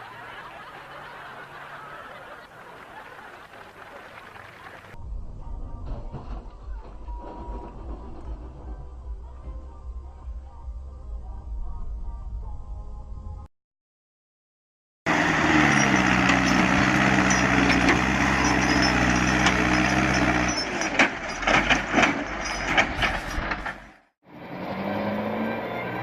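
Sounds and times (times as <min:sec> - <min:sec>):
motor engine running: 0:15.1 - 0:24.0
knocking and clatter: 0:16.3 - 0:24.0.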